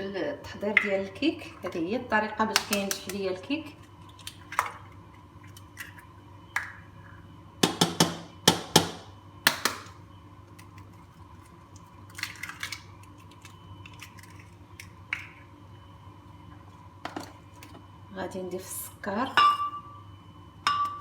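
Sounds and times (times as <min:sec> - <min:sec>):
eggs cracking on bowl rim: 0:02.5 - 0:03.2, 0:04.0 - 0:06.8, 0:09.5 - 0:15.4.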